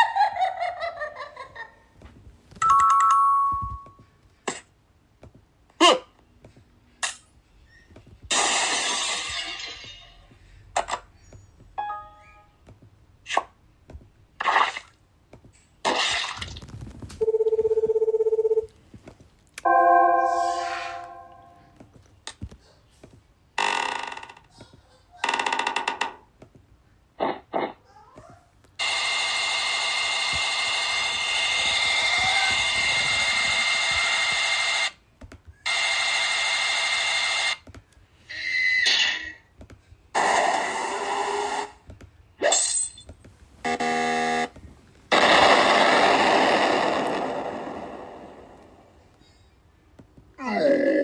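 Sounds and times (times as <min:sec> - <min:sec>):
struck chord: 0:19.6 - 0:21.7
electronic buzzer tone: 0:43.6 - 0:44.5.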